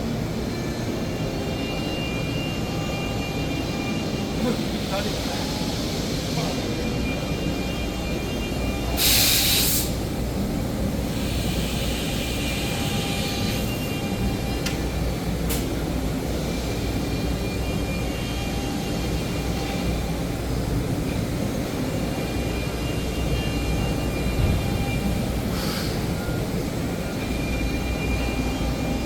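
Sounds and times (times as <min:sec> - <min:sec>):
machine mechanical hum: 0:00.0 - 0:29.0
loud hiss: 0:09.0 - 0:10.0, 0:25.5 - 0:26.1.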